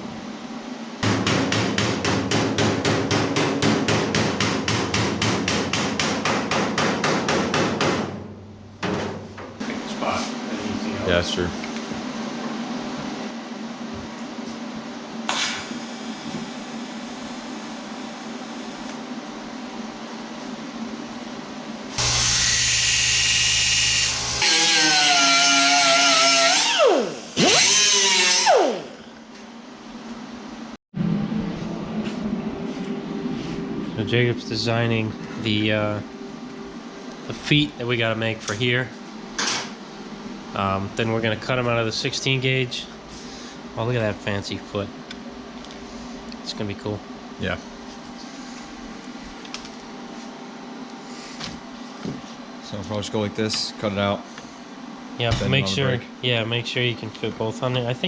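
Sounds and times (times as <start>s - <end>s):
power drill whining: 22.0s - 29.0s.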